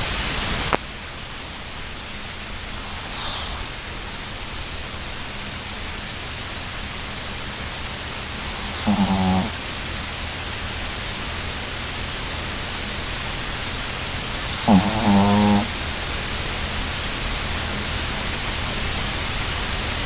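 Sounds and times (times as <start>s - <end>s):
steady background hiss: 0.0s - 20.0s
puppy snoring: 2.7s - 4.0s, 8.4s - 9.6s, 14.3s - 15.8s.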